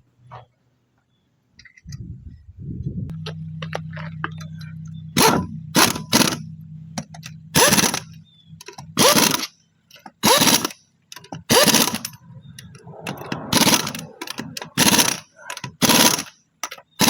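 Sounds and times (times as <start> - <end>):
impact wrench bursts: 4.5 - 17.0.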